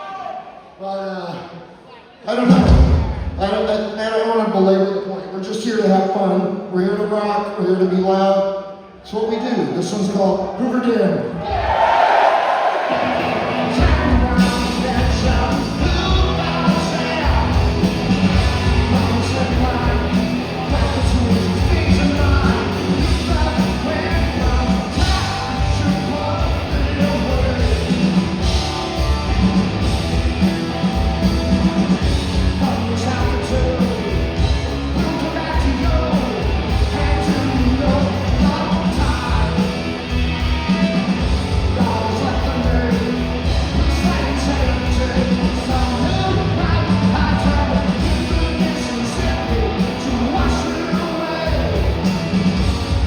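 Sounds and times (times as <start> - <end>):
person singing: 12.9 - 28.3, 41.6 - 52.8
live rock band playing: 12.9 - 53.0.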